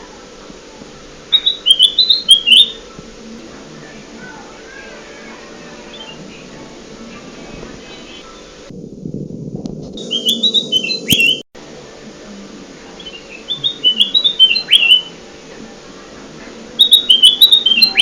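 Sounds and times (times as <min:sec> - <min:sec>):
steady low hum: 0:00.0 - 0:18.0
bulbul chirping song: 0:01.3 - 0:02.9, 0:05.7 - 0:06.6, 0:10.0 - 0:11.4, 0:13.0 - 0:15.2, 0:16.8 - 0:18.0.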